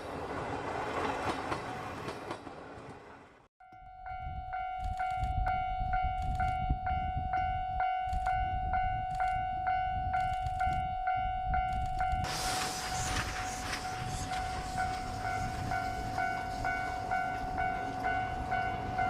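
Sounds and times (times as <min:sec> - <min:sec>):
approaching steam train: 0:00.0 - 0:03.5, 0:05.3 - 0:19.0
wind rumbling on microphone: 0:04.1 - 0:19.0.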